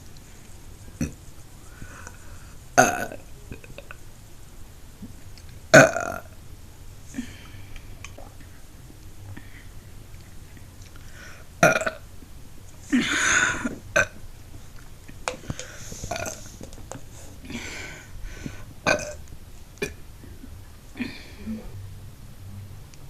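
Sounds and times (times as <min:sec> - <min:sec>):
woman burping: 0:02.8 - 0:03.9, 0:05.7 - 0:06.3, 0:11.6 - 0:12.0, 0:12.9 - 0:14.2, 0:16.1 - 0:16.4, 0:18.8 - 0:19.2.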